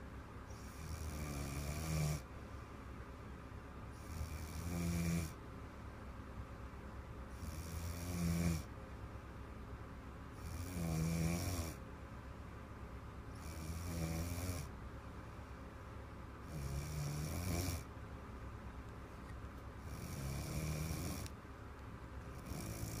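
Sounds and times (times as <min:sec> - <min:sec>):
child snoring: 0:00.5 - 0:02.3, 0:04.0 - 0:05.4, 0:07.3 - 0:08.7, 0:10.4 - 0:11.8, 0:13.4 - 0:14.7, 0:16.5 - 0:17.9, 0:19.8 - 0:21.3, 0:22.4 - 0:23.0.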